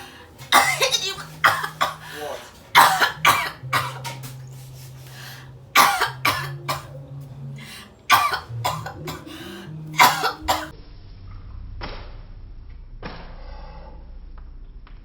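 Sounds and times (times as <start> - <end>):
faint low hum: 0.0 - 15.0
woman coughing: 0.5 - 4.2, 5.8 - 7.0, 8.1 - 9.4, 10.0 - 10.7.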